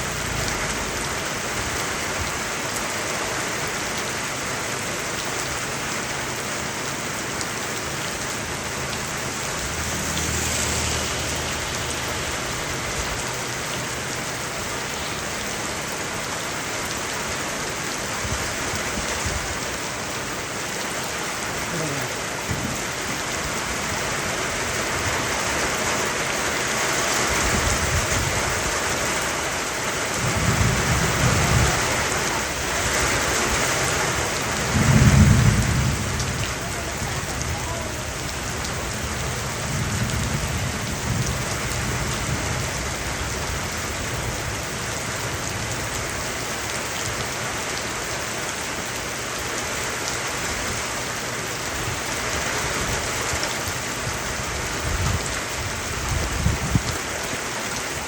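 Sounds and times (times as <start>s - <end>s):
heavy rain hiss: 0.0s - 58.0s
low thunder rumbles: 30.1s - 46.1s.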